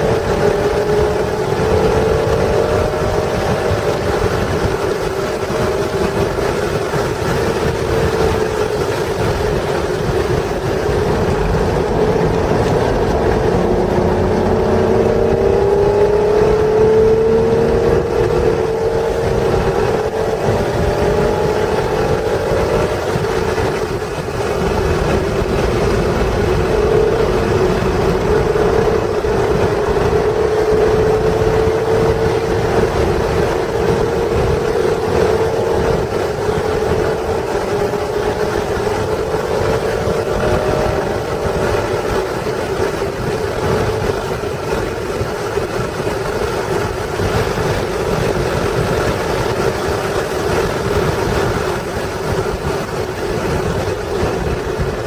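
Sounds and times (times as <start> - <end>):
car engine pulling hard: 0.0 - 55.0
road and wind noise: 0.0 - 55.0.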